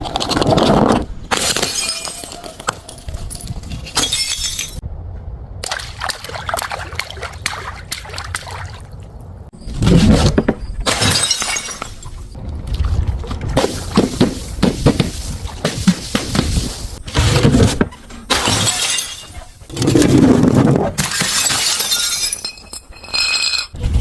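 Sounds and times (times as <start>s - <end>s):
broken glass clinks and crunches: 1.3s - 4.8s, 10.8s - 12.2s, 21.0s - 23.8s
glass bottles smashing: 1.3s - 4.8s, 10.3s - 12.2s, 18.2s - 19.4s, 21.0s - 23.8s.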